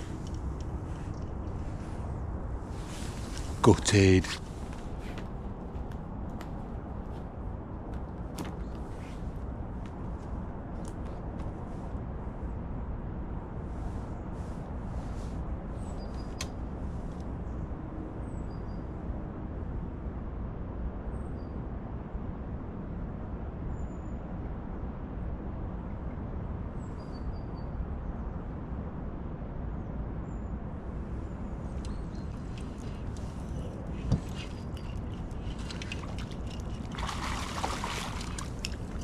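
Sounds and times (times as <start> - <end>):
low outdoor rumble: 0.0 - 18.2, 29.0 - 39.0.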